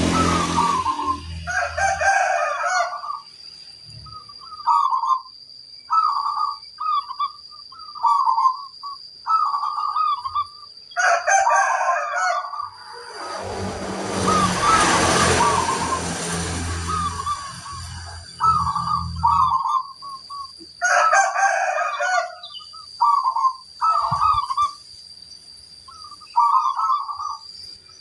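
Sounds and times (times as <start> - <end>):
doves cooing: 0.0 - 3.2, 14.0 - 24.8, 25.9 - 27.4
faint high whine: 12.5 - 20.6.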